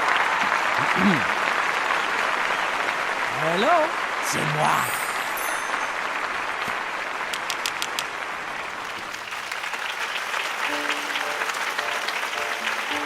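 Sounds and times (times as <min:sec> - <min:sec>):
audience applauding: 0:00.0 - 0:13.0
held musical notes: 0:10.6 - 0:13.0.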